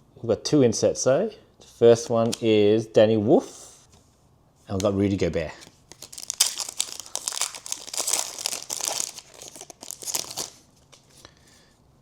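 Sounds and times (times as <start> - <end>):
foil wrapper crinkling and tearing: 5.9 - 11.1.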